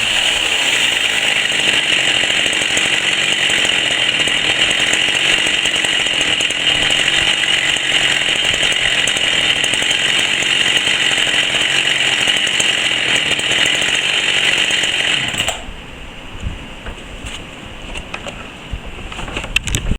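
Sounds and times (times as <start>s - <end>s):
chainsaw engine running: 0.0s - 15.7s.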